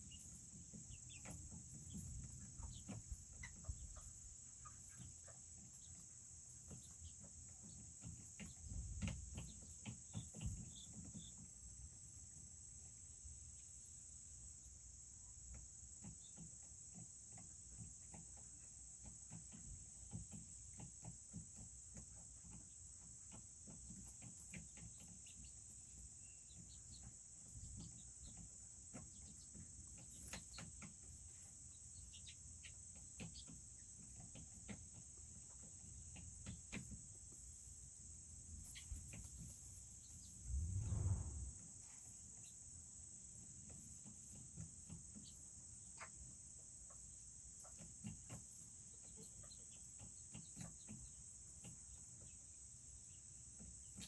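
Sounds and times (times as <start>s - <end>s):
dull low thump: 40.4s - 41.6s.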